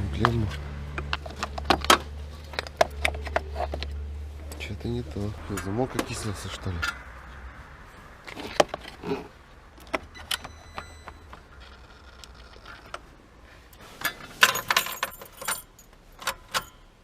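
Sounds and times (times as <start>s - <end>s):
keys jangling on a ring: 14.4s - 16.8s.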